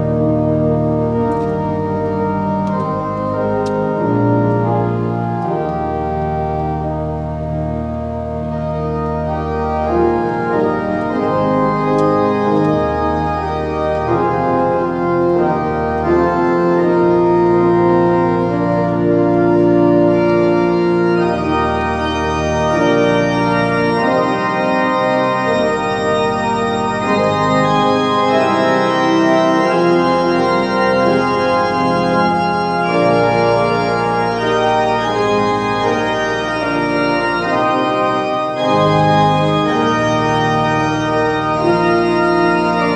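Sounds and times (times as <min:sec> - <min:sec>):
pipe organ playing chords: 0:00.0 - 0:42.9.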